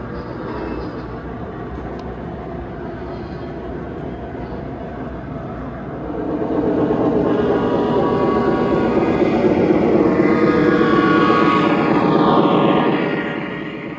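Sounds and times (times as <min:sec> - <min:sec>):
model trains rumbling on track: 0:00.0 - 0:13.2.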